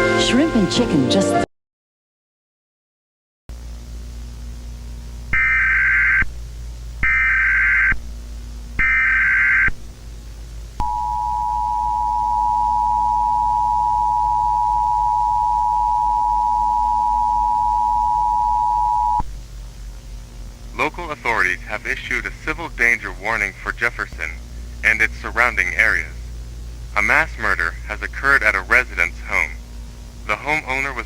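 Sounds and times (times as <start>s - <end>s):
low hum: 3.5s - 31.0s
data burst squeal: 5.4s - 6.2s, 7.0s - 8.0s, 8.8s - 9.7s
two-tone attention signal: 10.8s - 19.2s.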